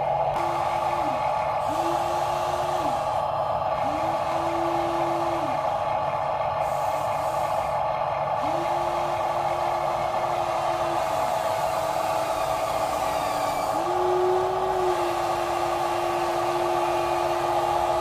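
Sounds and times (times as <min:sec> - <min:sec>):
small electric motors whining: 0:03.8 - 0:05.7, 0:10.2 - 0:18.0.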